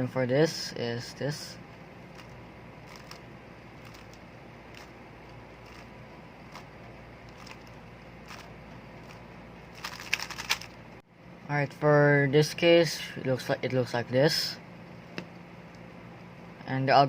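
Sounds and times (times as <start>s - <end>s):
low background hum: 0.0s - 17.0s
puzzle cube layers clicking: 9.8s - 10.8s.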